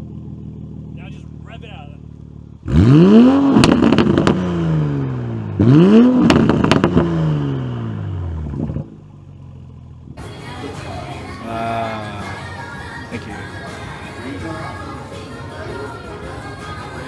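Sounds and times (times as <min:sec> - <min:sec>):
exhaust pops and crackles: 0:00.0 - 0:04.8, 0:05.6 - 0:10.2
car engine revving: 0:00.0 - 0:10.3
car engine idling: 0:00.0 - 0:17.0.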